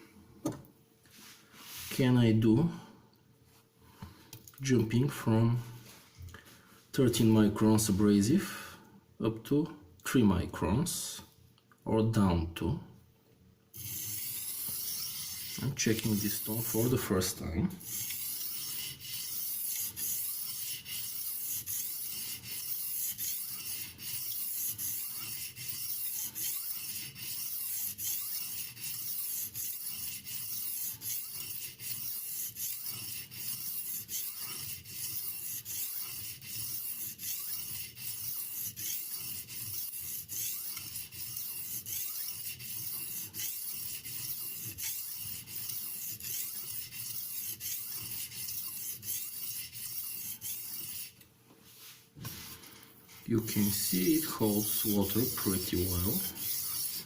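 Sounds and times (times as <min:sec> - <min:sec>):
knife scraping on whetstone: 0:13.8 - 0:57.0.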